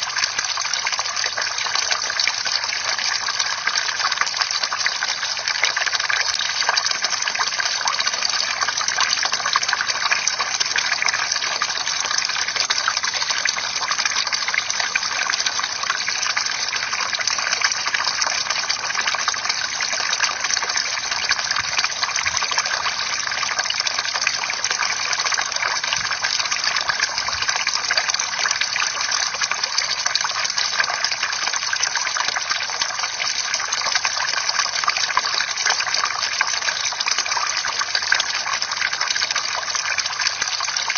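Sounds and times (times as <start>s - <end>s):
water splashing and trickling: 0.0s - 40.9s.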